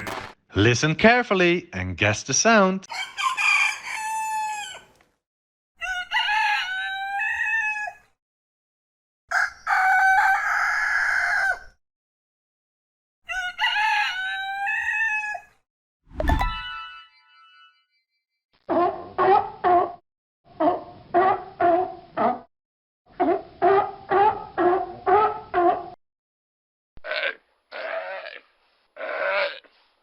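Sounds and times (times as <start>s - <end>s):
rooster crowing: 2.9s - 4.9s, 9.3s - 11.8s
brief electronic tone: 16.1s - 17.8s.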